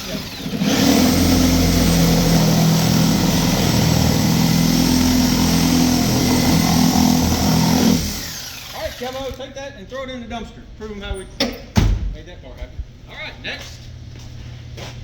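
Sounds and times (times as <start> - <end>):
reciprocating saw cutting metal: 0.0 - 9.4.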